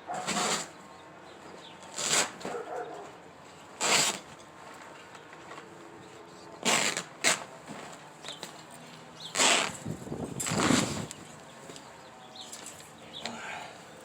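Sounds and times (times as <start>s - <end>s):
mattress padding tearing: 0.2s - 0.8s, 1.9s - 2.6s, 3.8s - 4.4s, 6.6s - 8.0s, 9.3s - 11.2s.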